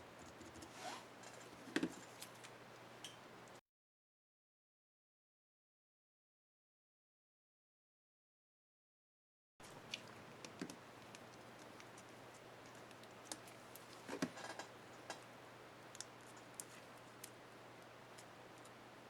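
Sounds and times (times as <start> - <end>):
low steady hum: 9.6 - 19.0.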